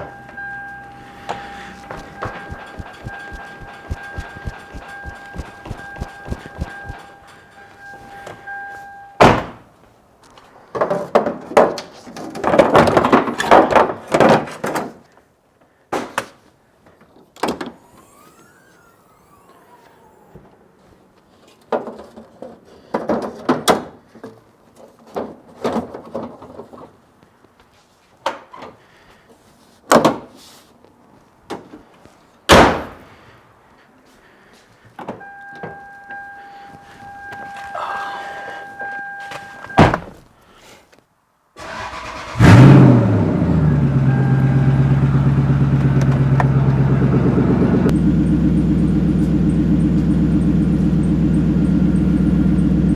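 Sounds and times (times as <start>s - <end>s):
sharp thuds: 1.7s - 7.2s
knocks and clunks: 1.7s - 7.3s.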